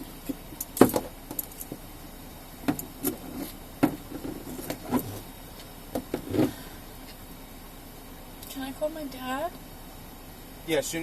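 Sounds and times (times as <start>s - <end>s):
light knocks and rubbing: 2.6s - 7.2s.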